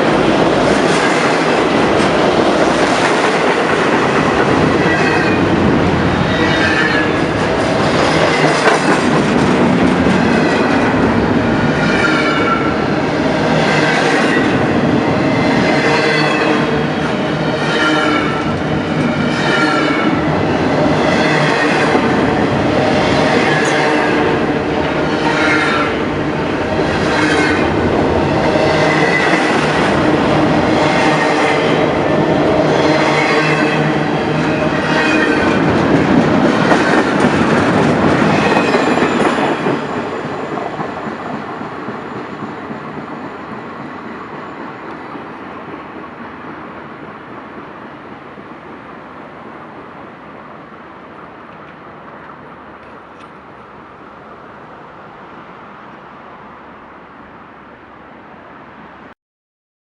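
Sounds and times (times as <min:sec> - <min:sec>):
wheels clacking over rail joints: 0:00.0 - 0:12.7
train wheels rumbling on rails: 0:00.0 - 0:56.0.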